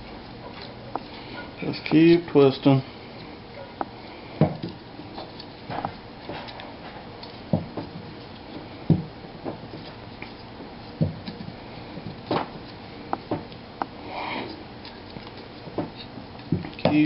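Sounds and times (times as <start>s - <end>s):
cable twisting clicks and rustles: 14.8s - 17.0s.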